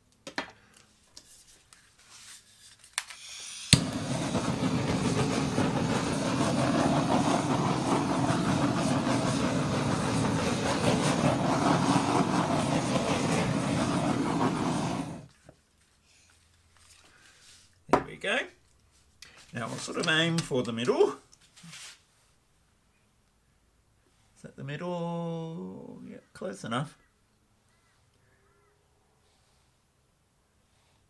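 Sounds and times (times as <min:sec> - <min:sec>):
torch igniter click: 0:03.0 - 0:15.2
butane torch hissing: 0:03.2 - 0:15.3.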